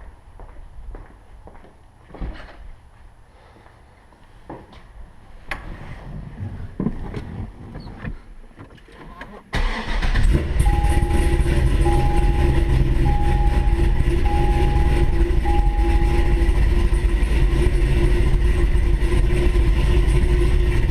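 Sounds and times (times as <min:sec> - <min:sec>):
car engine starting and idling: 0:09.4 - 0:20.9
warning chime beeping: 0:10.6 - 0:17.0.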